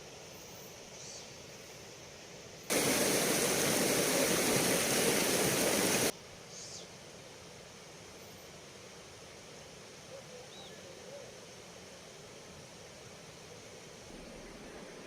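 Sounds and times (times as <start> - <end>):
faint steady hiss: 0.0 - 15.0
river water rushing: 2.7 - 6.1, 14.1 - 15.0.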